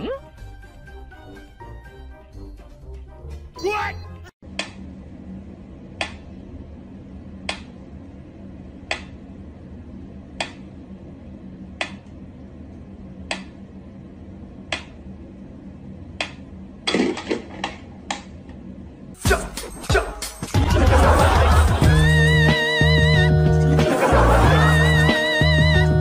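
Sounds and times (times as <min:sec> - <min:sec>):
low hum: 0:04.4 - 0:19.2.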